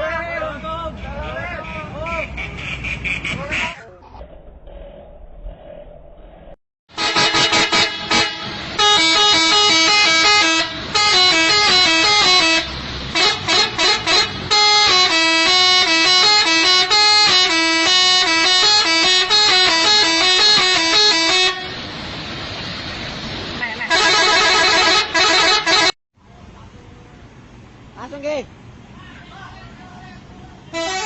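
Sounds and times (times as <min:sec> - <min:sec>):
musical vehicle horn tune: 0:06.9 - 0:21.8, 0:23.9 - 0:26.0, 0:30.7 - 0:31.0.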